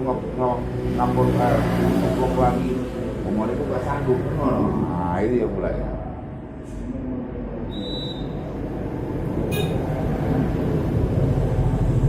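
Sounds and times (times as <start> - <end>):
low rumble of road traffic: 0.0 - 12.0
thin high bird whistle: 7.7 - 8.4.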